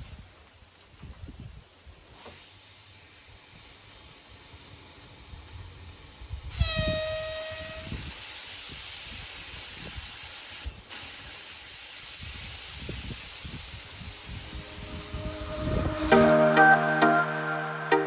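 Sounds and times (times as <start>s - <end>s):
spray gun air hiss: 6.5s - 16.3s
brief whistle: 6.6s - 8.0s, 14.6s - 18.0s.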